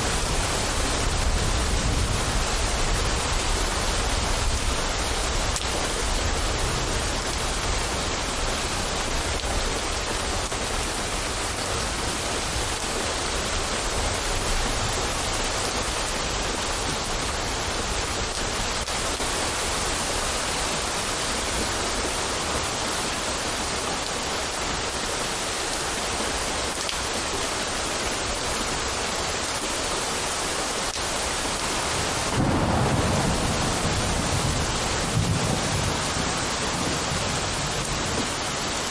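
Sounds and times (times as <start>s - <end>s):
low rolling thunder: 0.0s - 8.2s, 32.0s - 38.6s
steady downpour of rain: 0.0s - 38.9s.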